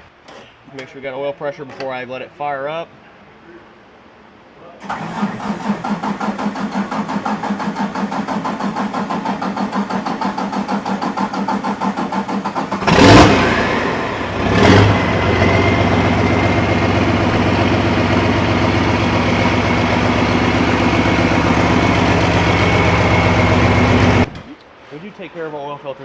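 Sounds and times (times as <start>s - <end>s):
tractor engine cranking: 4.8s - 24.3s
tractor engine firing and idling: 4.8s - 24.3s.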